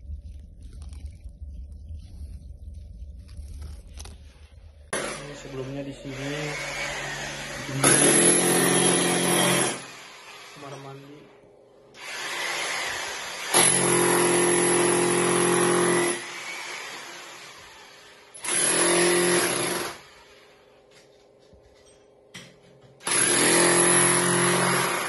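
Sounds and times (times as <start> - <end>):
electric power tool motor: 5.0 - 10.8.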